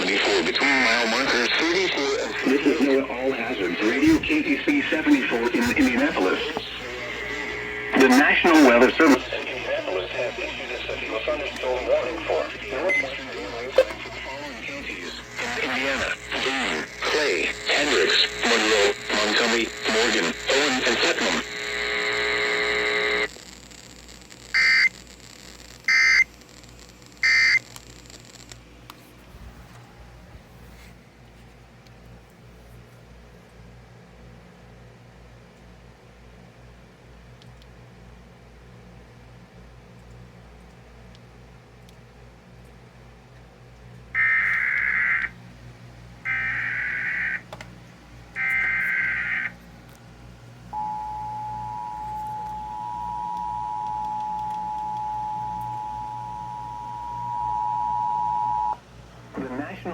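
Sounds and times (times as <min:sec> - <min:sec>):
faint low hum: 0:34.2 - 0:59.9
two-tone attention signal: 0:50.8 - 0:58.8.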